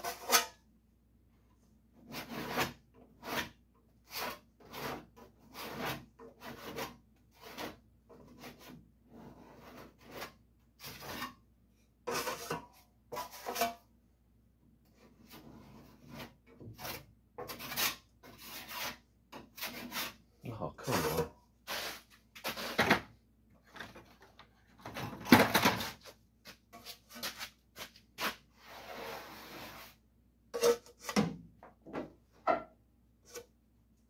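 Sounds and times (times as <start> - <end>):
trowel scraping filler on metal: 0.0 - 0.6, 2.0 - 11.4, 12.0 - 13.9, 15.0 - 20.2, 20.8 - 23.0, 25.8 - 31.3, 33.2 - 33.6.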